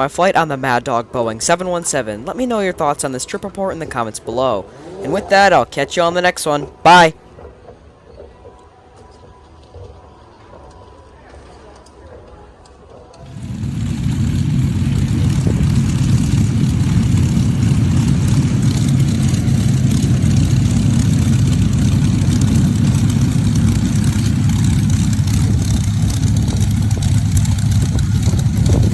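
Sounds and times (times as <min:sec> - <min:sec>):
jet engines running: 0:13.2 - 0:28.9.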